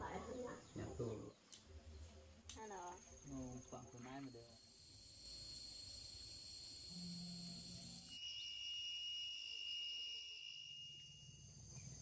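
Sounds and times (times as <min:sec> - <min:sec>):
insects shrilling: 0:02.6 - 0:12.0.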